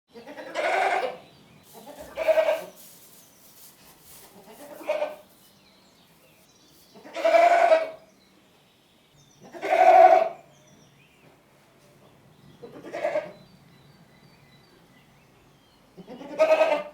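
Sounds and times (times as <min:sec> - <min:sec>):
goat bleating: 0:00.2 - 0:01.2, 0:01.8 - 0:02.8, 0:04.3 - 0:05.2, 0:07.0 - 0:08.0, 0:09.5 - 0:10.4, 0:12.8 - 0:13.3, 0:16.1 - 0:16.9.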